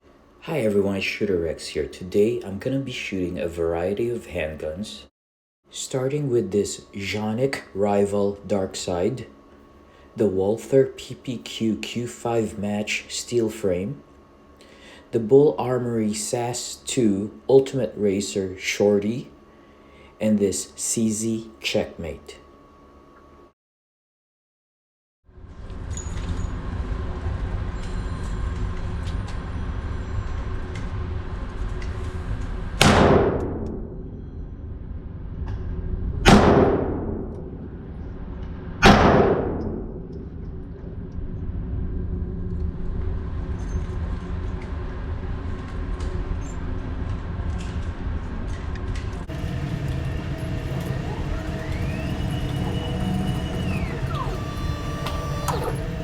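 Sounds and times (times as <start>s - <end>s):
steady low rumble: 33.5s - 56.0s.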